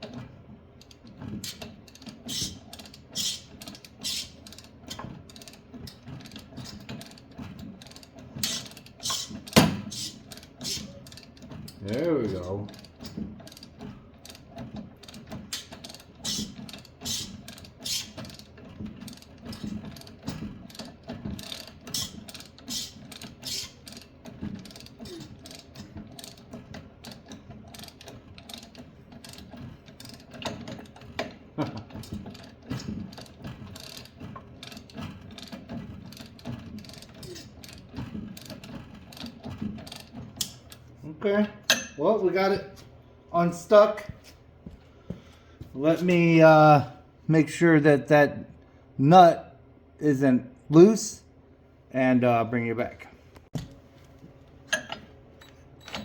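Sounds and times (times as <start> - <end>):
ratchet clicking: 0.8 - 11.3, 15.0 - 18.5, 21.4 - 30.6, 32.3 - 37.8.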